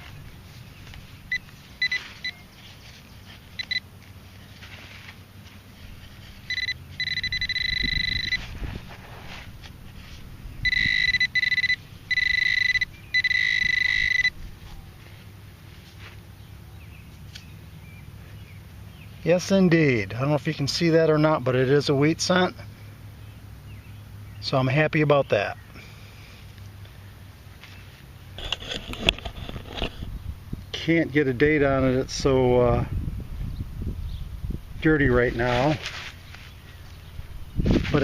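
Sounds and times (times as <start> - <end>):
metal detector beeps and tones: 1.3 - 2.6, 3.5 - 3.9, 6.4 - 8.6, 10.6 - 14.4.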